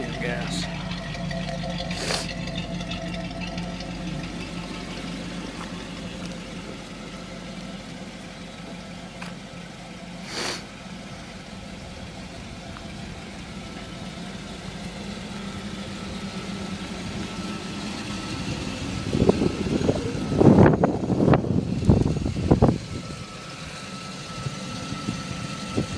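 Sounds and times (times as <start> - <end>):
loud uneven engine bursts: 0.0 - 7.6, 10.0 - 12.2
car engine idling: 0.0 - 25.9
short hiss: 2.0 - 2.3, 10.2 - 10.7.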